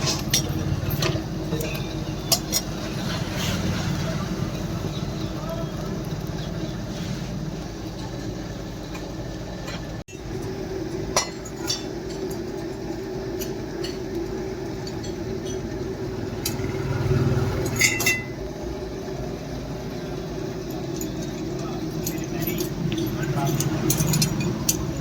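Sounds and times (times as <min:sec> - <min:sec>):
low machine hum: 0:00.0 - 0:25.0
light metallic clinks: 0:20.6 - 0:25.0.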